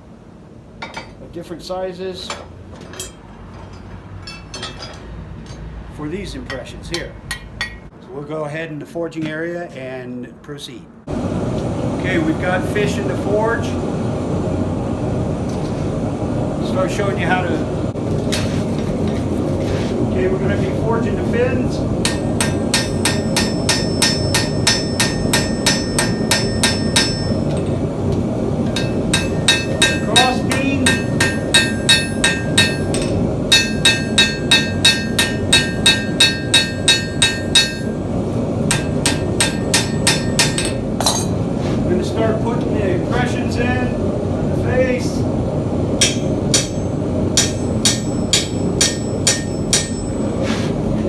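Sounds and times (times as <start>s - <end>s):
gas forge roaring: 11.1s - 51.0s
steady low rumble: 20.0s - 50.2s
hammer ringing on hot steel: 22.0s - 27.8s, 28.7s - 41.4s, 46.0s - 50.4s.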